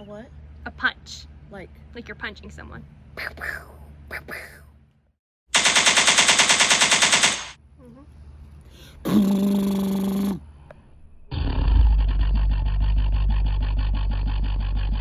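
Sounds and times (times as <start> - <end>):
mouth machine-gun rattle: 5.6 - 7.6
low buzzing hum from mouth: 7.7 - 15.0.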